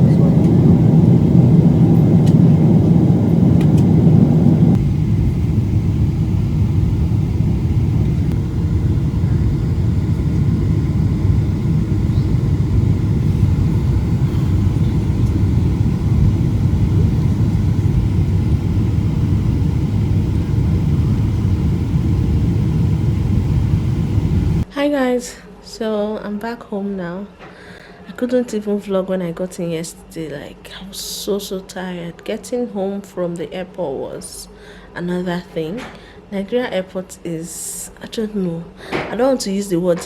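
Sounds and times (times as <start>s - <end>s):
vehicle rumble from inside: 0.0s - 5.8s, 6.4s - 24.6s.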